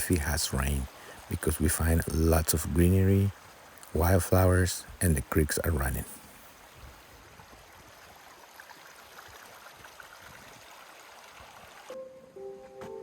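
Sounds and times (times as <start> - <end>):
creek water flowing: 0.0 - 12.0
music: 12.0 - 13.0.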